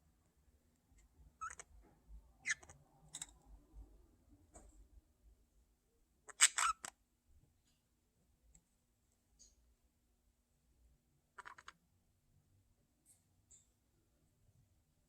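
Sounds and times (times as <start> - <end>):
budgerigars clicking: 1.4 - 1.6.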